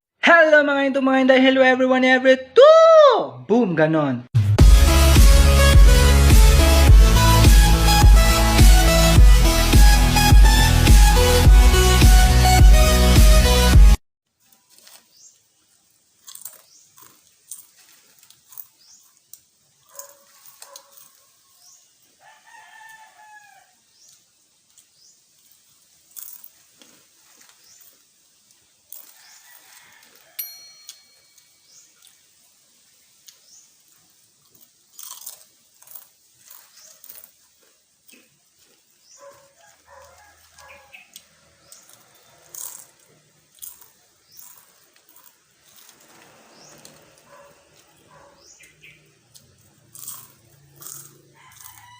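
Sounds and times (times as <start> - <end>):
chips being chewed: 16.1 - 21.3, 24.1 - 30.2, 34.4 - 51.9
rooster crowing: 22.2 - 23.8, 29.1 - 30.8, 39.3 - 41.2, 51.1 - 51.9.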